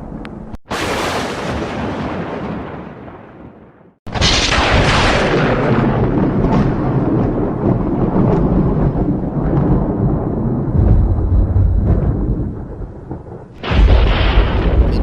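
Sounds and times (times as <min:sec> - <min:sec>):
loud deep rumbling: 0:04.1 - 0:15.0.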